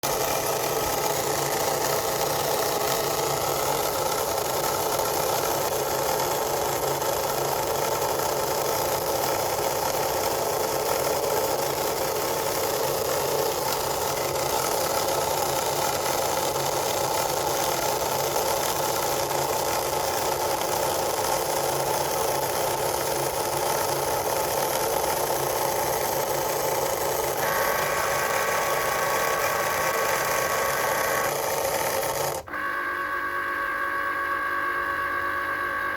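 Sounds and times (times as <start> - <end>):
cutting machine grinding: 0.0 - 35.9
high-pitched whine: 32.5 - 35.9.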